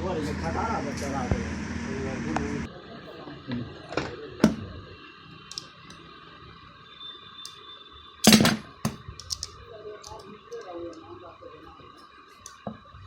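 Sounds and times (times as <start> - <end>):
tools clicking: 8.2 - 10.2.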